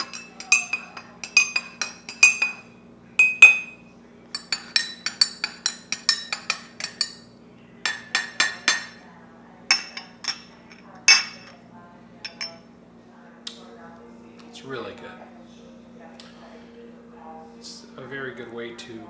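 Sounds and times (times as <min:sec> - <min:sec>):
dishes and cutlery clinking: 0:00.0 - 0:09.0, 0:09.7 - 0:11.6, 0:12.2 - 0:12.7.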